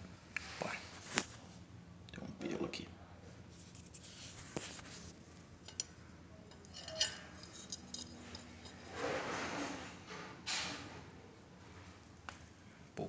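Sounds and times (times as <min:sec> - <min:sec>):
small metal parts clinking: 0:05.6 - 0:09.0.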